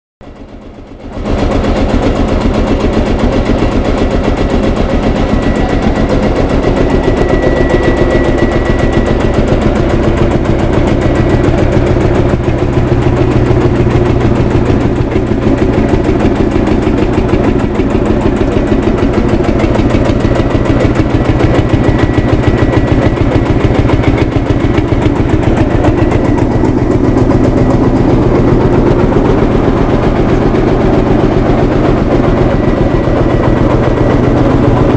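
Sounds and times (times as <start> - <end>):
tractor diesel engine running: 0.2 - 34.9.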